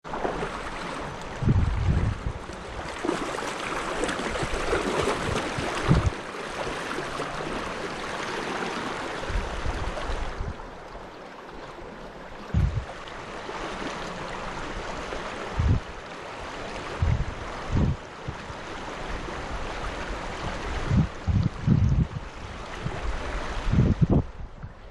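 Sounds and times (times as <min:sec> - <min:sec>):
river water flowing: 0:00.0 - 0:24.9
wind buffeting microphone: 0:01.2 - 0:03.0, 0:04.1 - 0:06.2, 0:09.2 - 0:10.8, 0:12.5 - 0:13.0, 0:14.7 - 0:16.0, 0:16.8 - 0:24.9.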